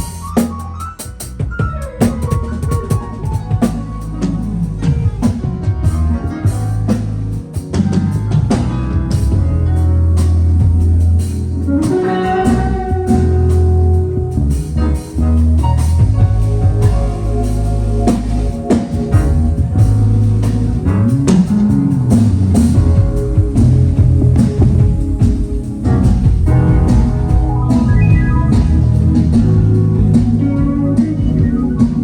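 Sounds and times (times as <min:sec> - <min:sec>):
bass guitar sustained notes: 0:00.0 - 0:32.0
drum kit strokes: 0:00.0 - 0:32.0
guitar line: 0:15.9 - 0:32.0.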